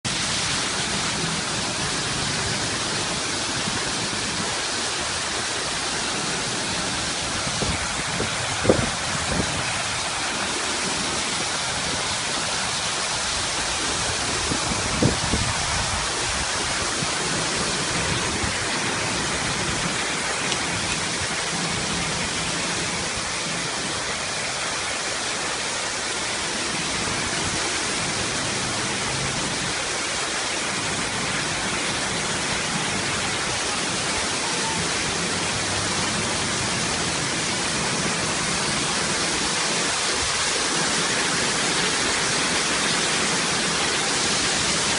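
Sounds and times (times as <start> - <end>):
waterfall rushing: 0.0 - 44.9.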